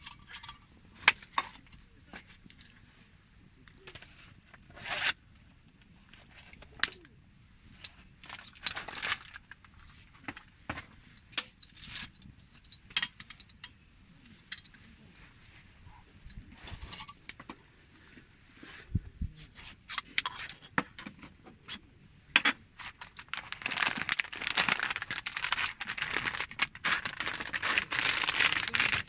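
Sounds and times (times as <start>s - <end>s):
rustles and scrapes: 0.0s - 3.1s, 3.7s - 13.0s, 14.2s - 22.1s, 22.8s - 29.0s
light metallic clicks and clinks: 11.2s - 15.5s, 16.1s - 17.6s.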